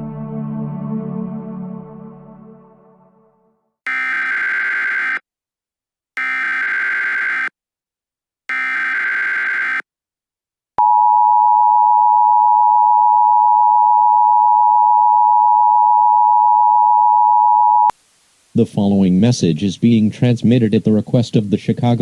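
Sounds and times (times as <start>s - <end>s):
screeching digital data bursts: 8.5s - 9.8s.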